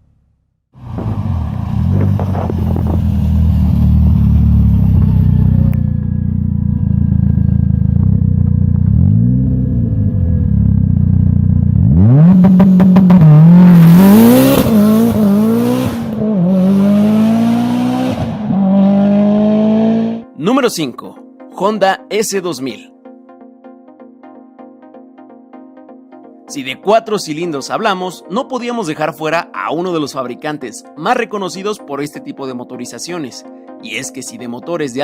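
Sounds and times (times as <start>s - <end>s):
car engine idling: 0.8s - 9.2s
car engine revving: 0.8s - 20.2s.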